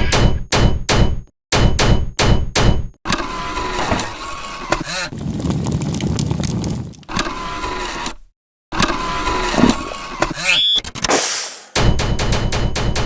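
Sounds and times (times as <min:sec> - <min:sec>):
sharp metallic clanging strikes: 0:11.1 - 0:11.9.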